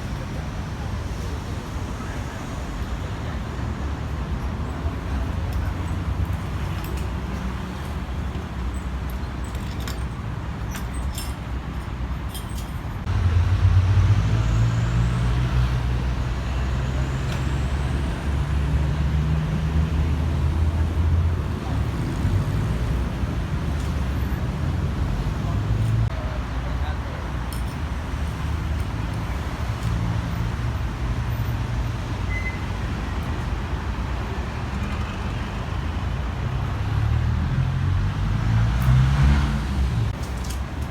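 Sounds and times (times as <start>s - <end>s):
vehicle engine humming: 12.8s - 27.4s.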